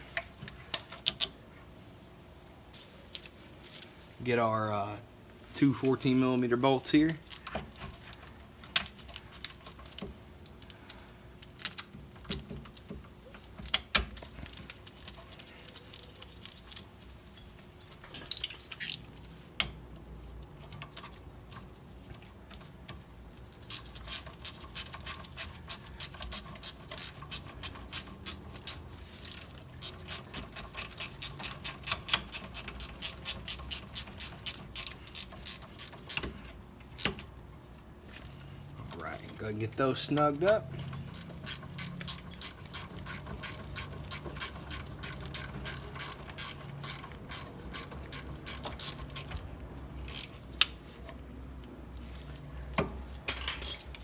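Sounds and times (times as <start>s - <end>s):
ratchet wrench clicking: 23.7s - 37.2s, 40.8s - 50.4s.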